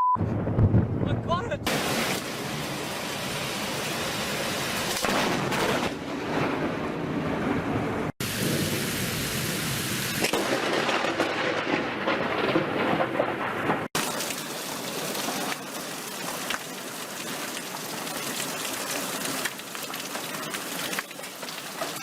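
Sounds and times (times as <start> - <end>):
rolling thunder: 0.2 - 2.7, 5.0 - 14.0
heavy rain: 1.4 - 22.0.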